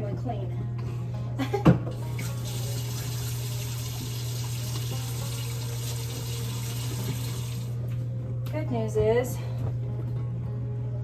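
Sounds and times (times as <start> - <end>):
tap running into sink: 2.2 - 7.7.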